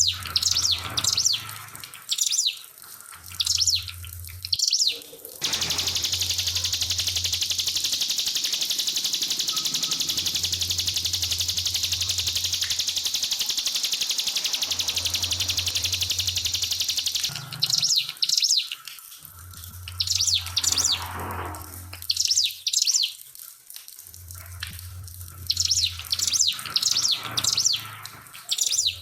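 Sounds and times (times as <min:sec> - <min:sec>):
bird high trill and chirps: 0:00.0 - 0:02.7, 0:03.3 - 0:18.8, 0:19.8 - 0:21.2, 0:22.0 - 0:23.2, 0:25.4 - 0:29.0
low hum: 0:05.4 - 0:17.8.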